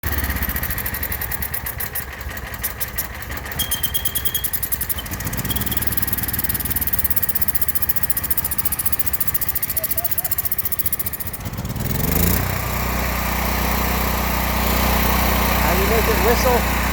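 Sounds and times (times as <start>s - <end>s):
generator engine running: 0.0s - 16.9s
high-pitched whistle: 3.6s - 5.9s.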